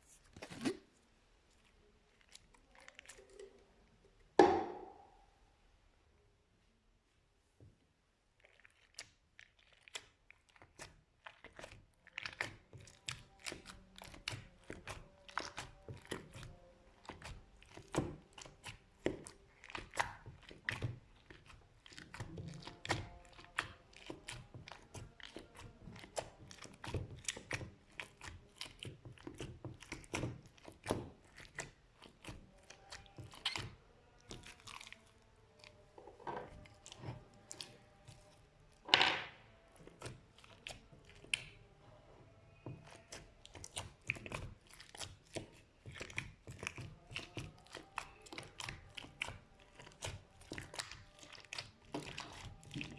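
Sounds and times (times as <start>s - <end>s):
slime crackling and popping: 8.4s - 35.8s, 39.8s - 41.7s, 42.5s - 52.9s.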